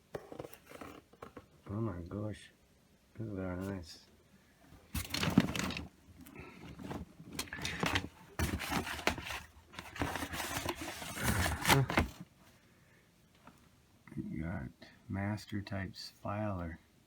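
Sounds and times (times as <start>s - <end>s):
rustling and scraping of items: 0.0s - 1.8s, 4.6s - 12.6s.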